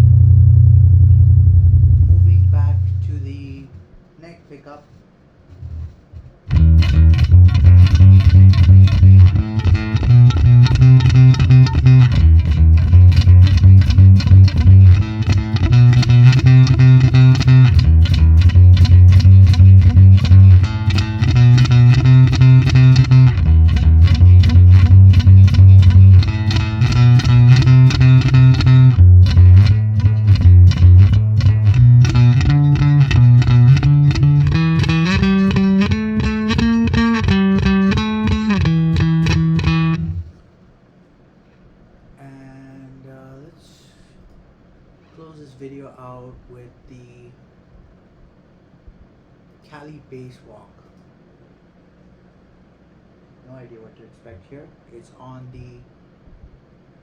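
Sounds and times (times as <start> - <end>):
electric bass riff: 0.0 - 3.6, 5.5 - 40.4.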